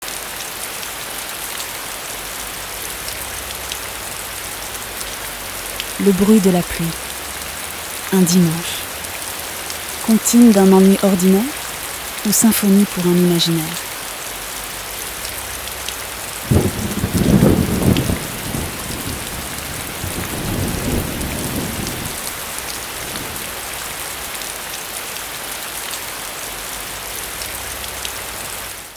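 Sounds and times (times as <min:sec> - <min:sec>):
steady rain falling: 0:00.0 - 0:28.9
thunder rumbling: 0:16.4 - 0:23.9.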